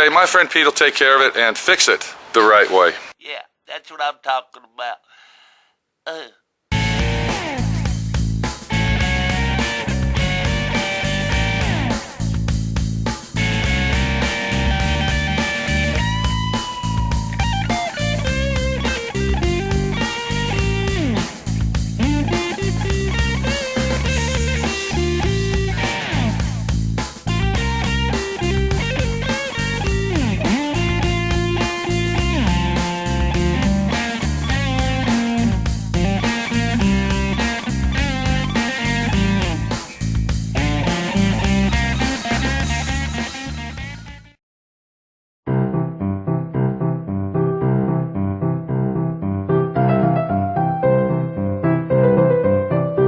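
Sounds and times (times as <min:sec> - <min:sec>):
electric guitar lead: 0:06.7 - 0:12.3, 0:13.4 - 0:44.3
steady drum beat: 0:06.7 - 0:44.1
bass: 0:06.7 - 0:44.4.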